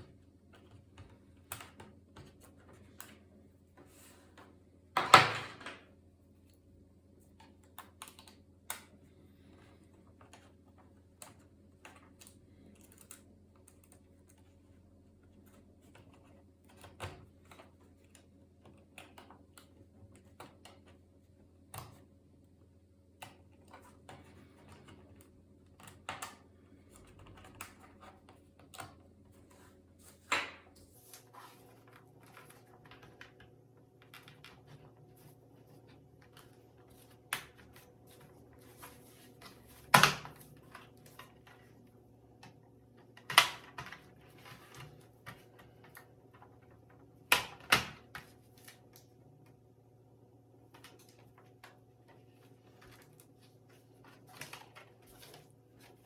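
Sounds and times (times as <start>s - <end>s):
faint steady hum: 0.0s - 56.0s.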